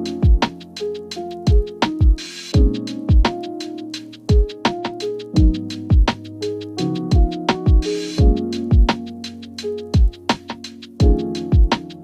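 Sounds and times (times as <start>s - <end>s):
electronic pop music: 0.0s - 12.0s.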